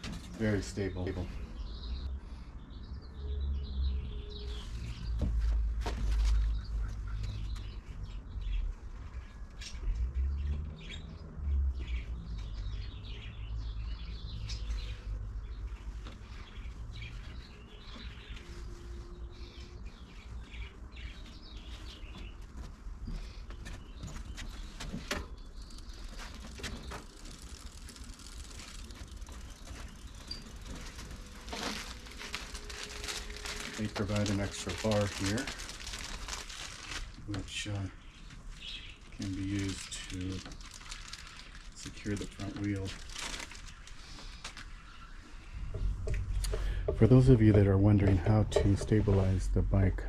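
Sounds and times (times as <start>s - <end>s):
birds chirping: 0.0s - 50.0s
low rumble: 45.4s - 50.0s.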